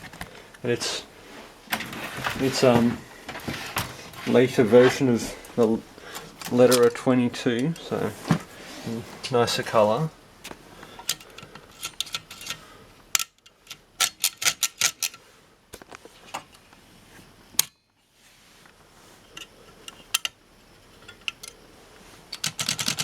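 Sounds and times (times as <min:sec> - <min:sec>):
typewriter keys clacking: 0:22.4 - 0:23.0.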